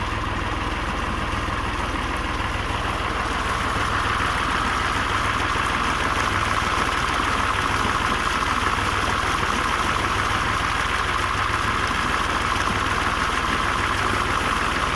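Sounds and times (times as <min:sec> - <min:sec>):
tractor diesel engine running: 0:00.0 - 0:14.9.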